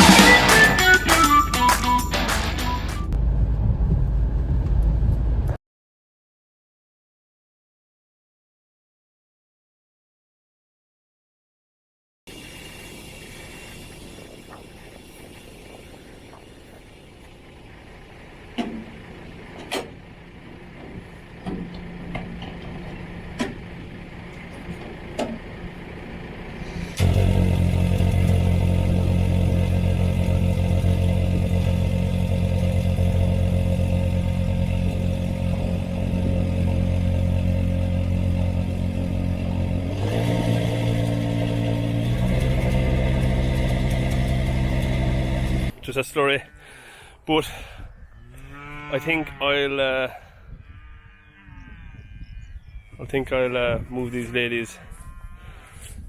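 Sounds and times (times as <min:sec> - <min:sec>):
vehicle engine running: 0:00.0 - 0:05.5, 0:12.3 - 0:45.8.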